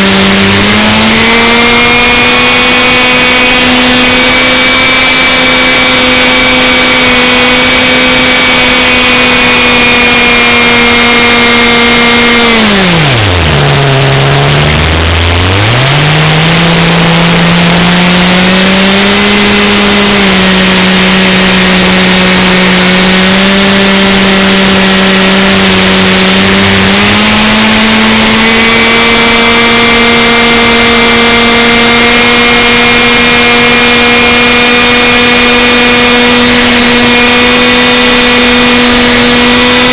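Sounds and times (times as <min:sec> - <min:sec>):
engine running fast: 0:00.0 - 0:39.9
rushing noise: 0:00.0 - 0:39.9.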